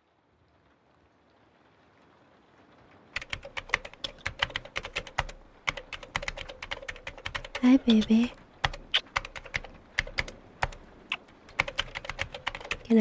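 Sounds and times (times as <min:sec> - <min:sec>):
soft rain: 0:00.0 - 0:13.0
laptop keyboard typing: 0:03.2 - 0:10.8, 0:11.5 - 0:13.0.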